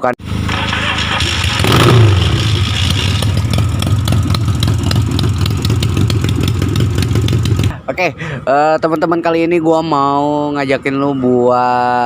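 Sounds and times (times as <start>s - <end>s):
motorcycle engine running: 0.2s - 7.8s.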